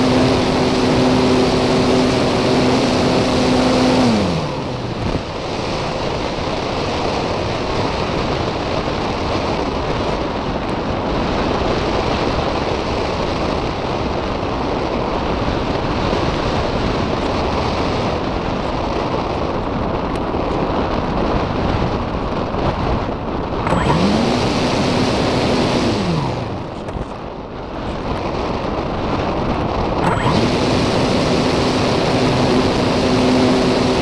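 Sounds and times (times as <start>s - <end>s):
electric motor whine: 0.0s - 6.9s, 23.6s - 27.2s, 30.0s - 34.0s
wind rushing over microphone: 0.0s - 34.0s.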